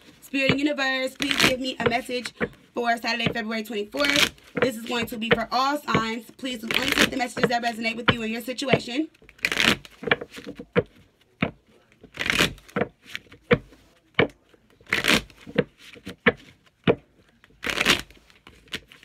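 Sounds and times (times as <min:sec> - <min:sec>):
playing cards snapping and tapping: 0:09.3 - 0:19.0
cards riffle shuffling: 0:11.9 - 0:19.0.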